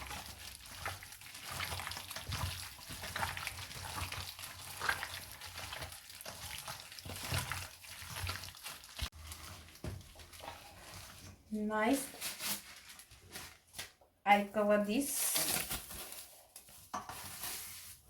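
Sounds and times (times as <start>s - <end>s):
wet squelching of marinade: 0.0s - 11.5s.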